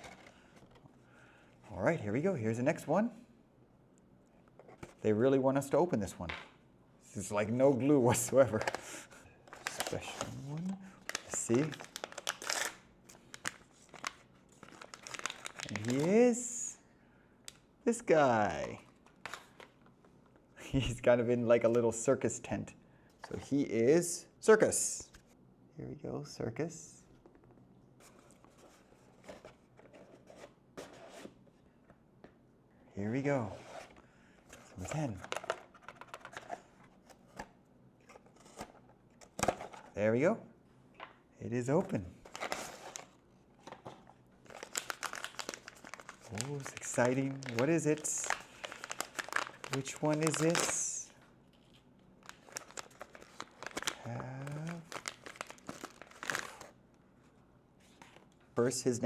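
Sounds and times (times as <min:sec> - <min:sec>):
plastic wrapper crinkling and tearing: 0:08.1 - 0:16.2, 0:44.4 - 0:56.8
packaging rustling and tapping: 0:35.2 - 0:36.6, 0:43.6 - 0:47.6, 0:48.6 - 0:50.7, 0:54.9 - 0:56.6.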